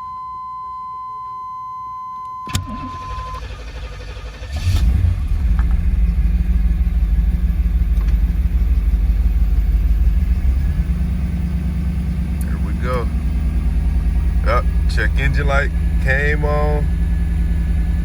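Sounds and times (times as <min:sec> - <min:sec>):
car warning chime: 0:00.0 - 0:03.5
car engine idling: 0:03.4 - 0:18.0.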